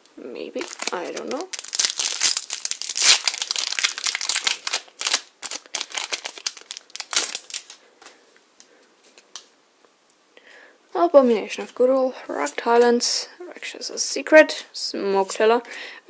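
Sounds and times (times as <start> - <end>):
foil wrapper crinkling: 0.6 - 8.2.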